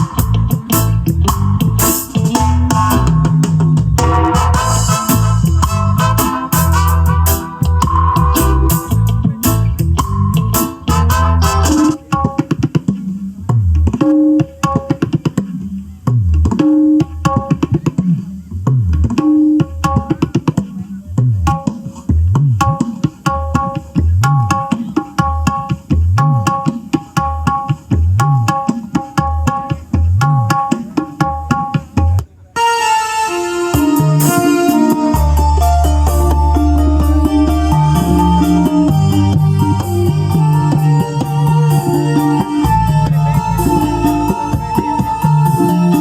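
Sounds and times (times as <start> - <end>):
bending bass notes: 0.0 - 12.5, 32.0 - 46.0
plucked melody: 0.0 - 12.6, 31.6 - 46.0.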